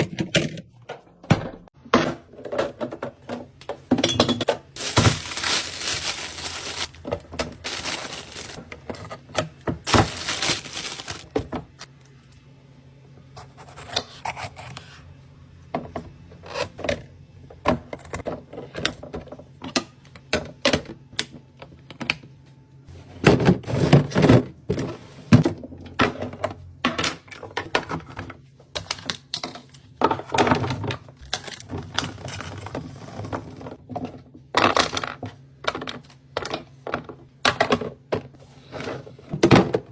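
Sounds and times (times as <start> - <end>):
containers clicking and thunking: 1.9 - 11.6
packaging rustling: 4.8 - 8.6, 9.8 - 11.3.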